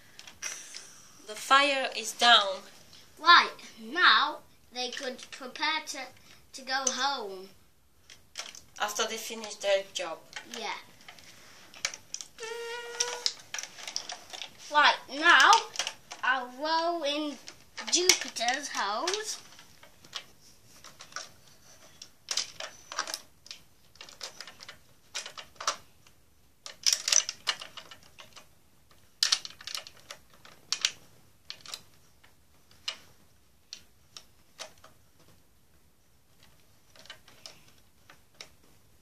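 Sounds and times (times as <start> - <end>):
plastic toy parts clicking: 8.0 - 9.6, 10.3 - 11.2, 11.8 - 14.5, 15.3 - 16.3, 17.4 - 33.1, 33.7 - 35.0, 36.4 - 38.6.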